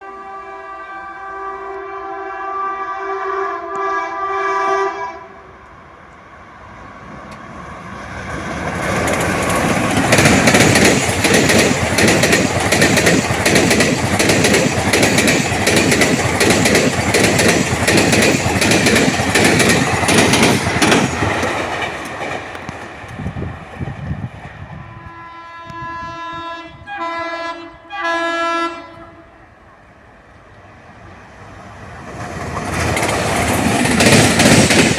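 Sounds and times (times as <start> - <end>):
train horn: 0.0 - 5.7, 24.8 - 29.6
train wheels clattering over rails: 7.1 - 24.6, 31.8 - 34.9.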